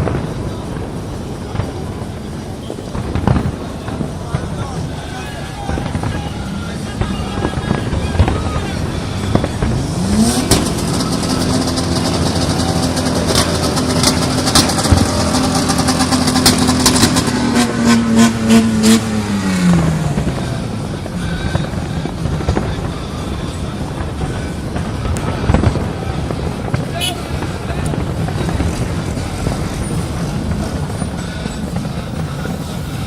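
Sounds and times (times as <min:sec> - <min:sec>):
exhaust cracks and pops: 0:07.0 - 0:32.9
engine revving: 0:07.4 - 0:33.0.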